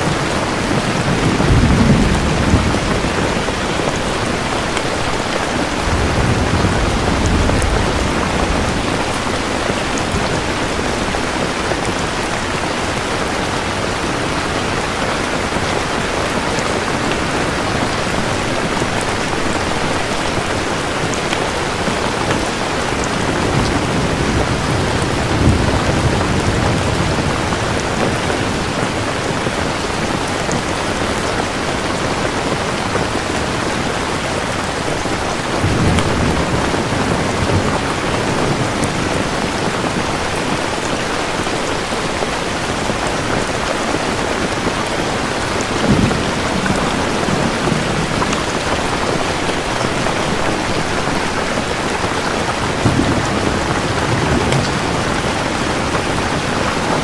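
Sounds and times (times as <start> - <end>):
steady rain: 0.0 - 57.0
low rumble of thunder: 0.4 - 12.6, 21.8 - 30.6, 35.0 - 40.9, 52.6 - 57.0.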